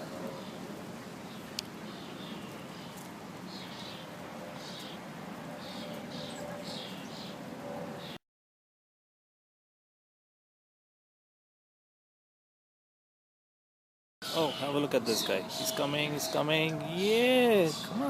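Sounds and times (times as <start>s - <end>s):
steady background noise: 0.0s - 8.2s, 14.2s - 18.0s.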